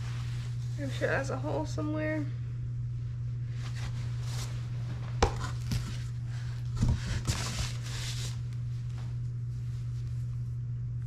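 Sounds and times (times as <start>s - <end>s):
steady low hum: 0.0s - 11.0s
fabric rustling: 3.4s - 6.4s.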